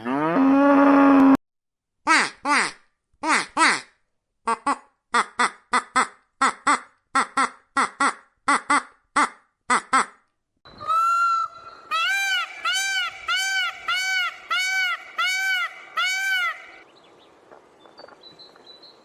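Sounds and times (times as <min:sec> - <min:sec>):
animal calling: 0:10.7 - 0:16.8.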